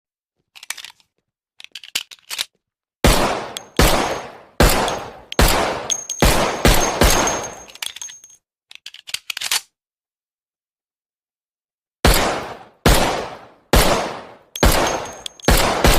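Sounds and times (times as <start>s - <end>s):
pistol shots ringing out: 3.0s - 7.7s, 12.0s - 15.9s
pistol handling clicks: 3.5s - 9.7s, 14.6s - 15.7s.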